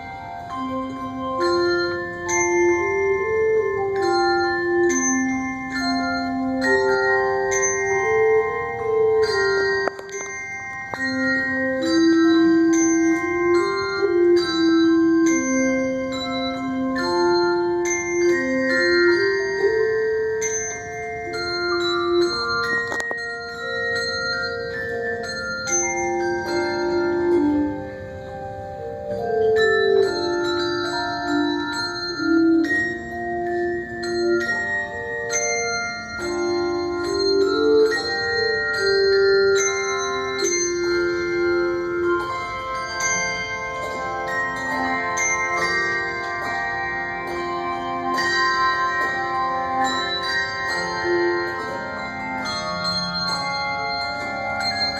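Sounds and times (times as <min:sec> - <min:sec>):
handbell choir playing: 0:00.0 - 0:54.9.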